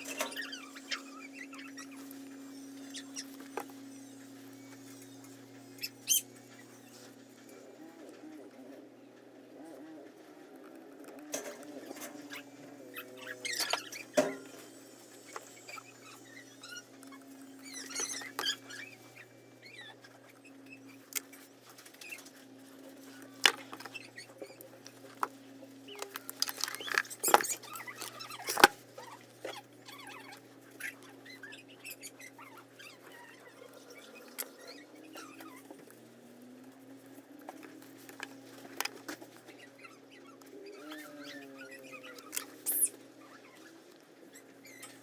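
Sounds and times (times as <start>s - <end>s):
small tools scratching and ticking: 10.4s - 36.0s.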